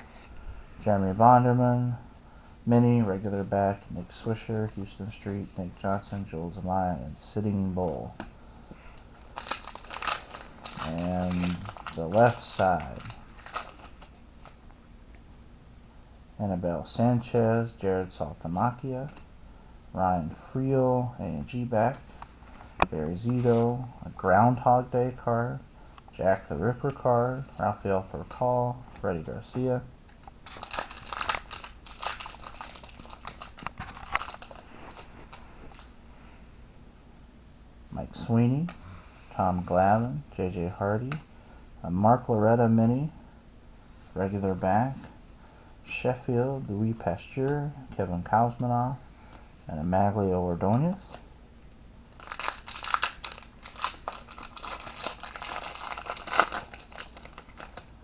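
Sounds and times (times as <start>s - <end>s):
wrapper crinkling and tearing: 9.2s - 14.6s, 30.4s - 35.9s, 52.1s - 58.0s.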